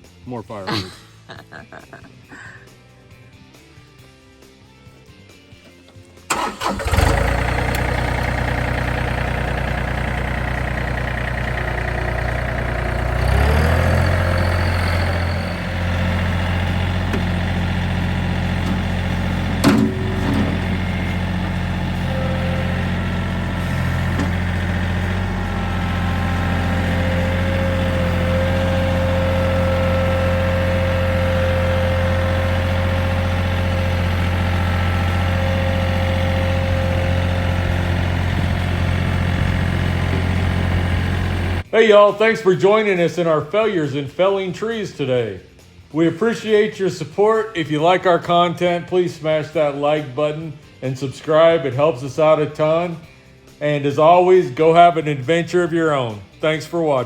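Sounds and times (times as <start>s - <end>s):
tractor engine idling: 6.3s - 41.7s.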